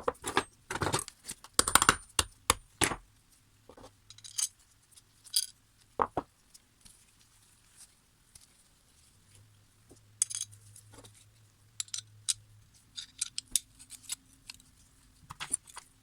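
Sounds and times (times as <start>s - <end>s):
small metal clinks and clicks: 10.2s - 10.9s, 11.8s - 14.7s.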